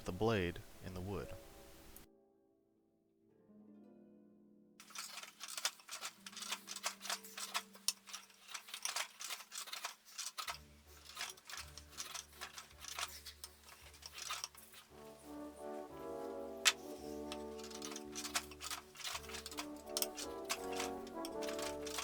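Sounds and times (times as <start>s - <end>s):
soft background music: 0.0s - 22.0s.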